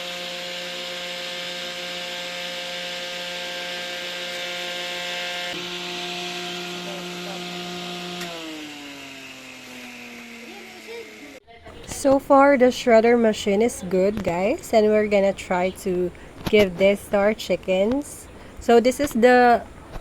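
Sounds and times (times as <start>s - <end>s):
shredder machine chopping leaves: 0.0s - 11.4s.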